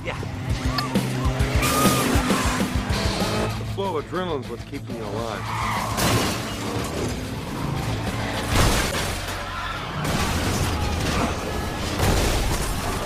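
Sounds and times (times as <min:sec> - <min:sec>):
steady low bass music: 0:00.0 - 0:05.5.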